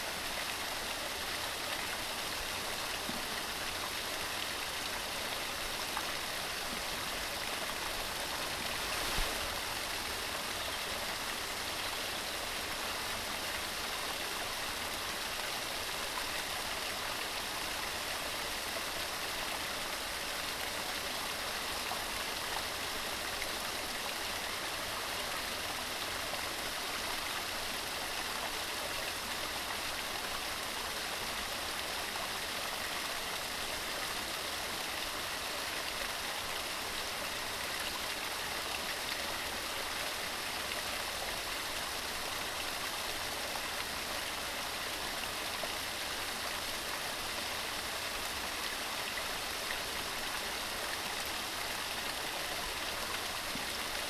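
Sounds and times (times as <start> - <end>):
stream rushing over rocks: 0.0 - 20.6.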